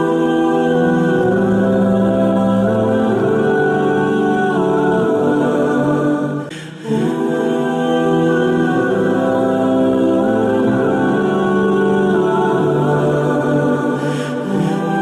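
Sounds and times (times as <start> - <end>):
wordless choir-like vocals: 0.0 - 15.0.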